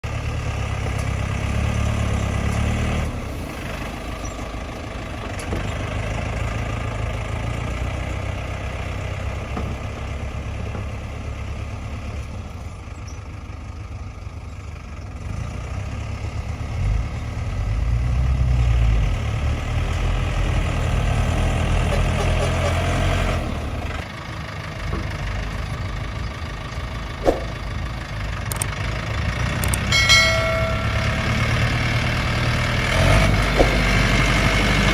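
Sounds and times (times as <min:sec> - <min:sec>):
tractor engine rumbling: 0:00.0 - 0:34.9
sharp click: 0:28.5 - 0:28.7.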